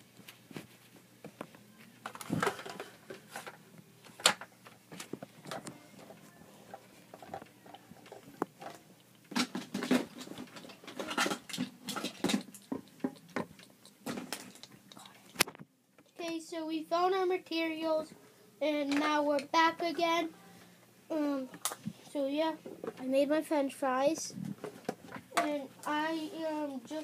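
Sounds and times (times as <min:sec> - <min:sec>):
small objects clicking and rustling: 0:02.0 - 0:16.2.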